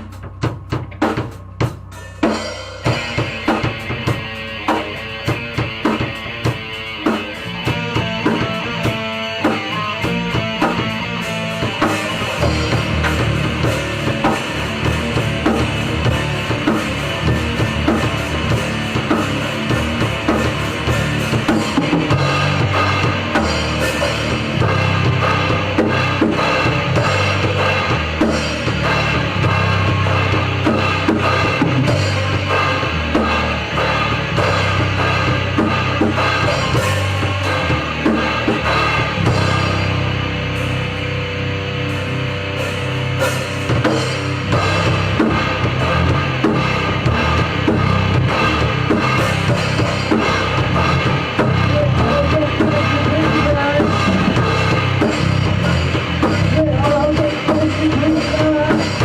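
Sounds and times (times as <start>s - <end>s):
rock band playing: 0.0s - 59.0s
bass drum thumps: 43.8s - 59.0s.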